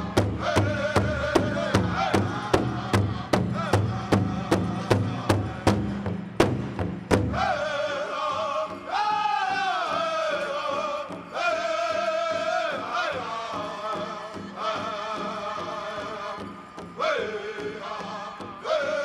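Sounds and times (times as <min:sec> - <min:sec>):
men singing in unison: 0:00.0 - 0:06.2, 0:07.2 - 0:19.0
big drum beating: 0:00.0 - 0:07.9.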